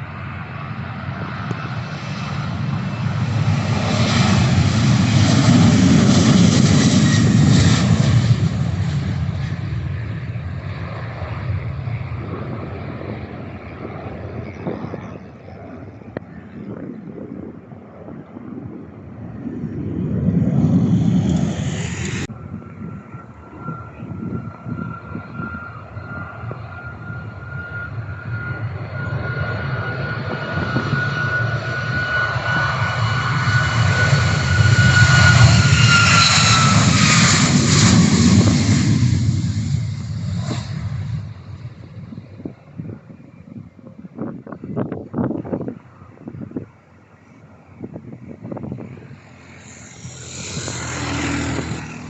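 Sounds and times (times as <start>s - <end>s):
jet airliner passing: 0.0s - 52.0s.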